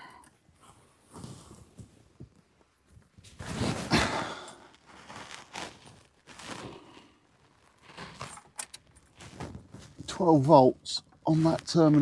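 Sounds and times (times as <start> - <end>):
handling rustling and clattering: 7.4 - 12.0
small knocks and rustles: 7.5 - 12.0.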